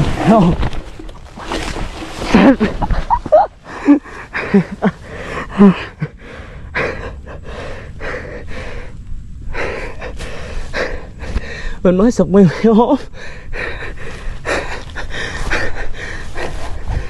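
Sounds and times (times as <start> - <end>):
person gasping breaths: 3.6 - 11.8, 13.0 - 17.0.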